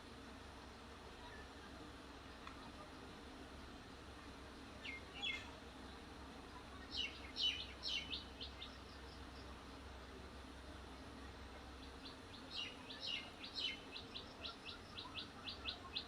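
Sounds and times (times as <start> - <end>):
small bird chirping: 6.8 - 9.2, 11.8 - 16.0.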